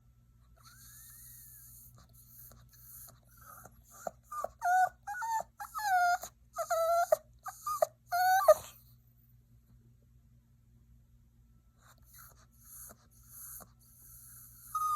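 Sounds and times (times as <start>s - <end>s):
puppy whining: 0.6s - 8.9s, 11.9s - 14.9s.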